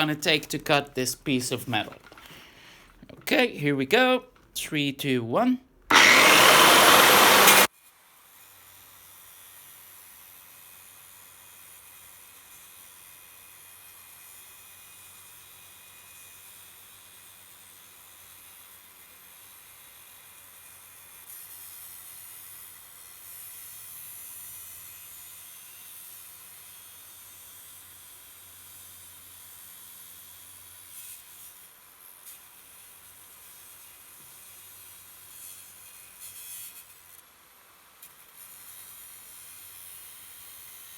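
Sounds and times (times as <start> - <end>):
angle grinder cutting metal: 5.9 - 7.7.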